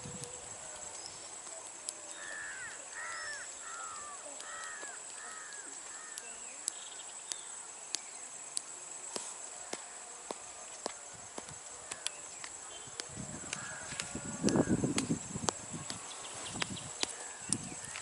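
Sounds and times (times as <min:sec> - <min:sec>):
bird calling: 0:00.0 - 0:07.5
high insect-like whine: 0:00.0 - 0:18.0.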